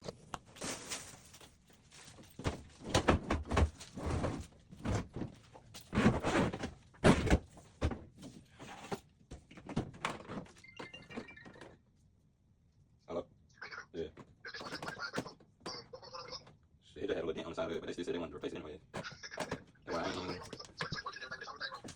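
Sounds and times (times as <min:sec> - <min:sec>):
knocks thuds and scrapes: 0:00.5 - 0:10.5.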